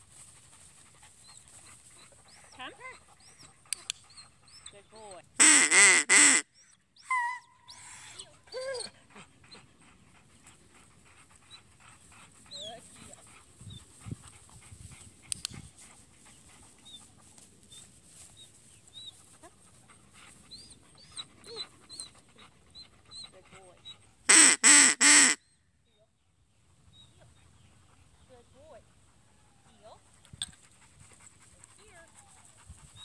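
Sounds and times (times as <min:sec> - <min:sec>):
dog panting: 0:00.1 - 0:05.2, 0:08.2 - 0:17.6, 0:19.2 - 0:24.3, 0:29.8 - 0:33.0
dog whining and whimpering: 0:07.0 - 0:09.0.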